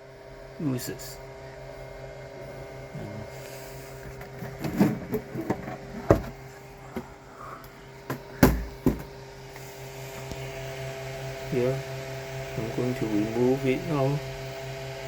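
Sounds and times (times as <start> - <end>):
steady electrical hum: 0.0 - 15.0
hard objects knocking on workbench: 8.4 - 9.1.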